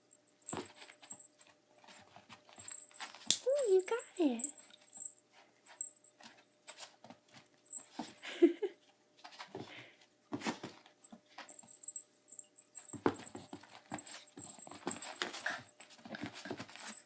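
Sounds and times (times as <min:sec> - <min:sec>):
light knocks and scuffles: 0:09.2 - 0:11.8, 0:12.8 - 0:17.0.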